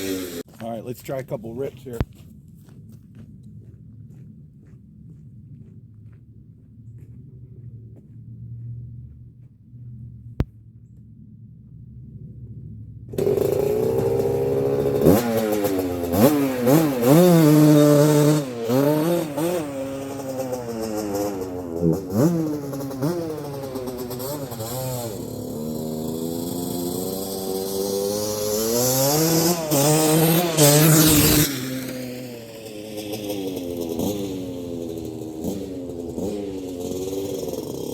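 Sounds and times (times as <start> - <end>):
two-stroke motorcycle engine revving: 0.0 - 0.6, 13.1 - 37.9.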